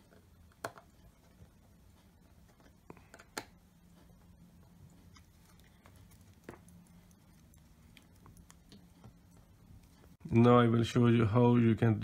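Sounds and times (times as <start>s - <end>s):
faint room hum: 0.0s - 12.0s.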